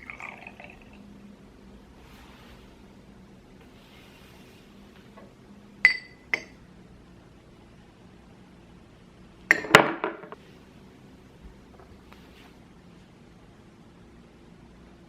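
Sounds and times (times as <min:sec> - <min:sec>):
glassware clinking: 0:00.0 - 0:00.9, 0:05.8 - 0:06.6, 0:09.5 - 0:10.4.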